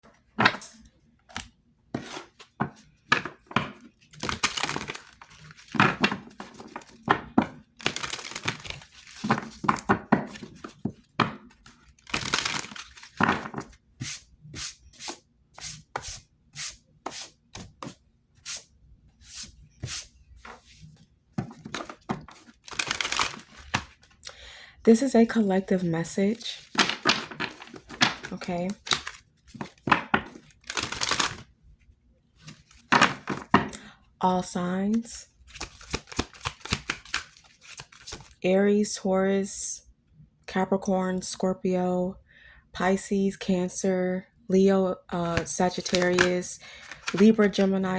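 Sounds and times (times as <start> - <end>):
cards being shuffled: 1.3 - 7.2, 7.8 - 10.9, 11.5 - 16.2, 21.4 - 24.2, 25.7 - 31.5, 34.9 - 38.4, 45.2 - 47.8.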